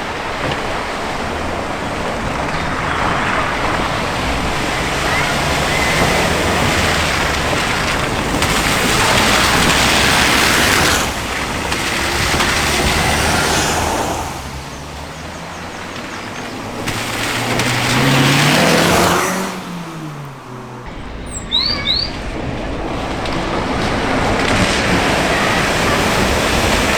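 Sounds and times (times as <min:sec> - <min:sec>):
car engine passing: 0:00.0 - 0:26.9
water spraying off car tyres: 0:00.0 - 0:26.9.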